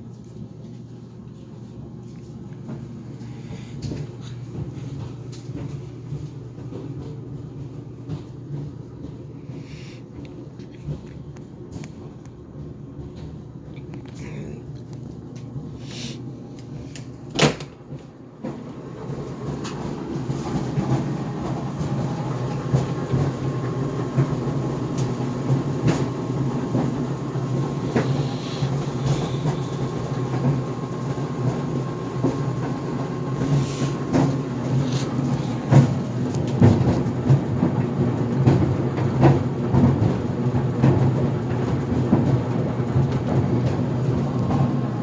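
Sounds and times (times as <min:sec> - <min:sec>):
clothes dryer drum rumbling: 0:00.0 - 0:45.0
knocks and bangs in dryer: 0:17.3 - 0:18.0.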